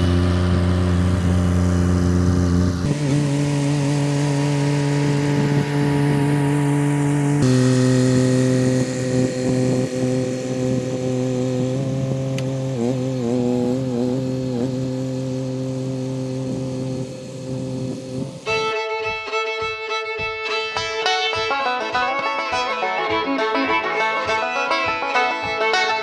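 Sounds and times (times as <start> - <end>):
excavator engine running: 0.0 - 18.7.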